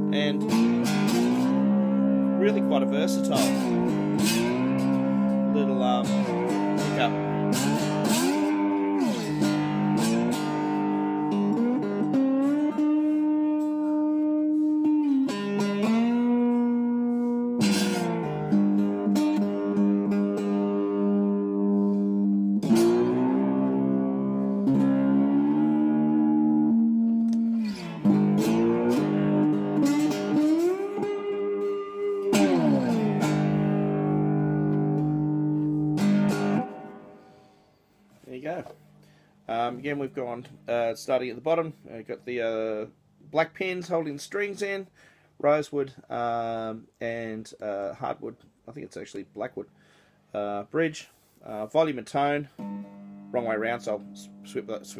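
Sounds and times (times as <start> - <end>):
electric guitar sliding chords: 0.0 - 40.1, 52.5 - 54.9.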